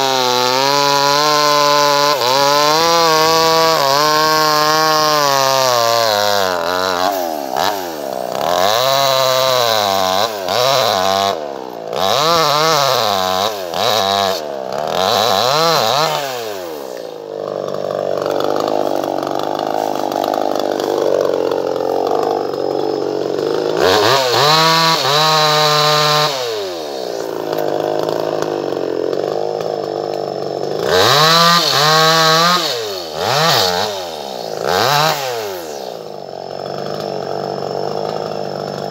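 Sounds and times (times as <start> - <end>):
chainsaw engine revving: 0.0 - 38.9.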